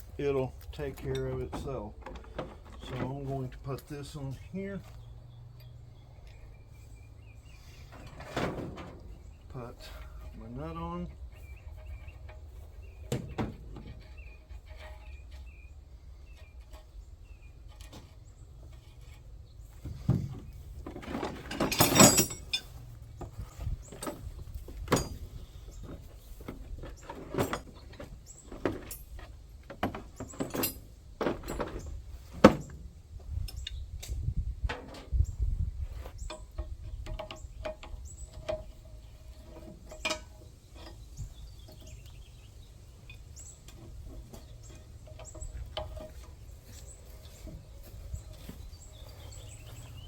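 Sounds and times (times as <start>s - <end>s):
metal tools clicking and knocking: 21.4s - 22.8s, 24.9s - 25.4s, 27.2s - 31.9s, 36.3s - 41.0s.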